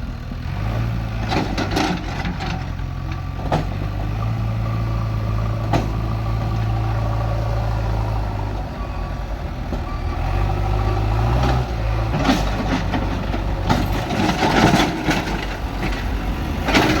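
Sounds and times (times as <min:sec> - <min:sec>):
diesel engine running: 0:00.0 - 0:17.0
metal clanks and rattles: 0:01.2 - 0:03.8, 0:12.1 - 0:17.0.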